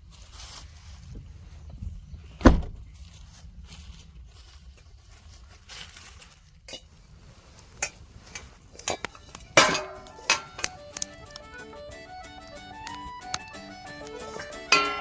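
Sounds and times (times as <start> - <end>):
camp cookware clinking: 6.7 - 7.0, 7.6 - 11.6, 12.5 - 15.0
music: 9.4 - 15.0.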